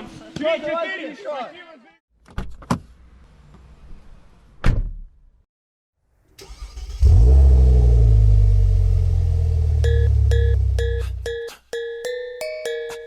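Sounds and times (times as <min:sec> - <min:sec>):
car engine revving: 0:06.5 - 0:10.8.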